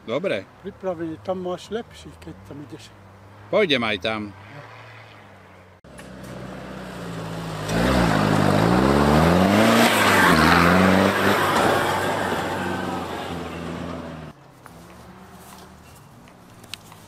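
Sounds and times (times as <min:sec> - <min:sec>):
engine revving hard: 0:06.5 - 0:14.3.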